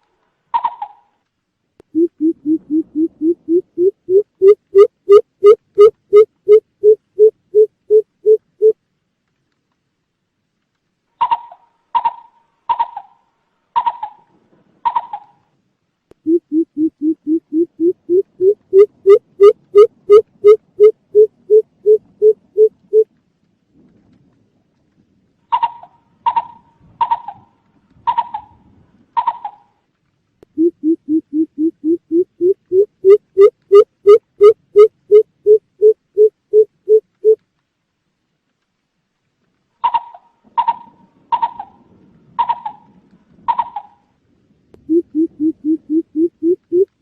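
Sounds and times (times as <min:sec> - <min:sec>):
bird deep hoots: 0:02.0 - 0:04.8, 0:16.3 - 0:23.0, 0:30.6 - 0:37.4, 0:44.8 - 0:47.0.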